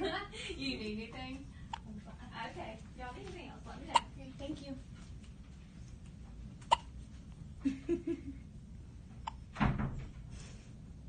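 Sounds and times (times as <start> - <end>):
baby hiccuping: 3.9 - 4.2, 6.6 - 7.0, 9.2 - 9.5.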